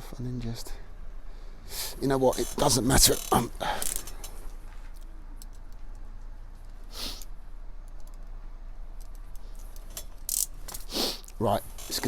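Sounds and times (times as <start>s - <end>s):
steady low hum: 0.0s - 12.0s
wire cutters handling clicks: 3.2s - 4.4s.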